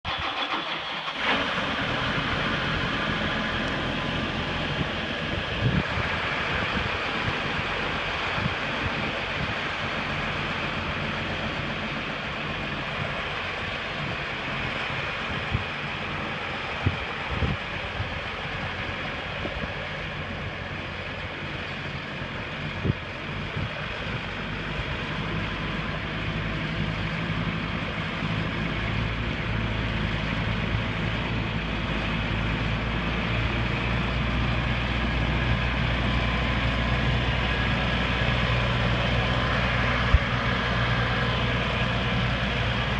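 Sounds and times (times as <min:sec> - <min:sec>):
tractor diesel engine running: 0:00.0 - 0:42.9.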